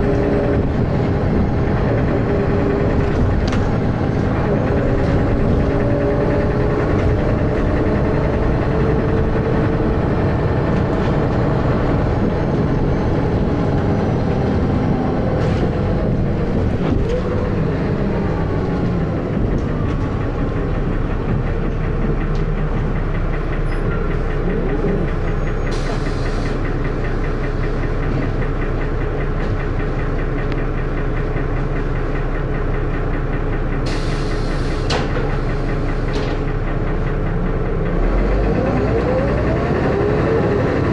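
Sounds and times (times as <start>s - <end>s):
bus diesel engine knocking: 0.0s - 40.9s
short air hisses: 33.9s - 35.0s.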